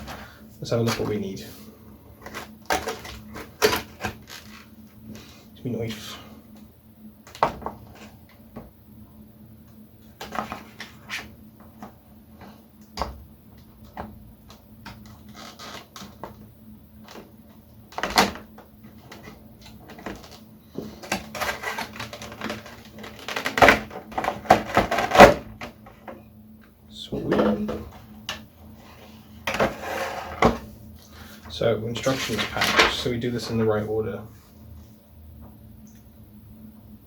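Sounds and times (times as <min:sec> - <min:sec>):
plastic packaging clicking and rustling: 0:02.2 - 0:04.7, 0:17.9 - 0:20.4, 0:21.0 - 0:26.2.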